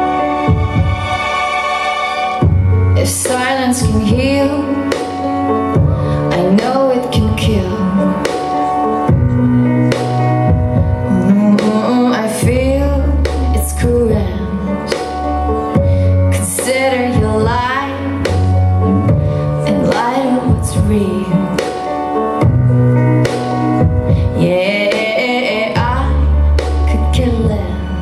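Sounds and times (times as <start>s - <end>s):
person singing: 10.8s - 21.9s.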